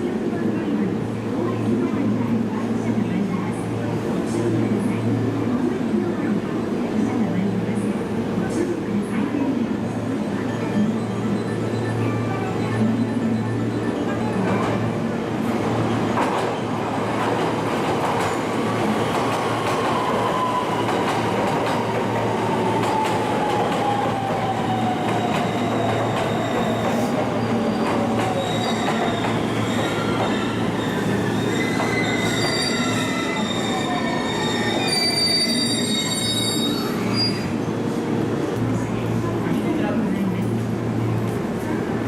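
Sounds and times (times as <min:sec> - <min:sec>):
wheel and brake squeals: 0:28.4 - 0:37.5.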